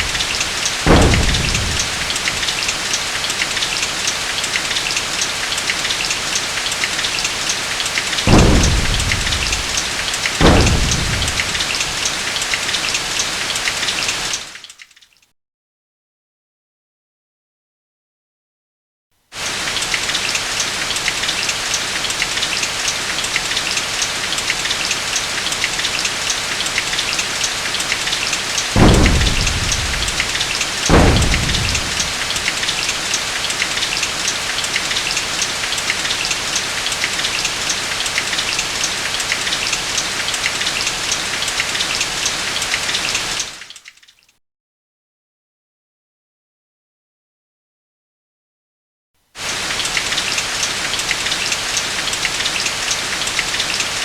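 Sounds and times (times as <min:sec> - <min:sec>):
thunder claps rumbling: 0:00.0 - 0:03.6, 0:08.1 - 0:12.3, 0:28.7 - 0:33.3
heavy rain falling: 0:00.0 - 0:14.6, 0:19.4 - 0:43.6, 0:49.4 - 0:54.0.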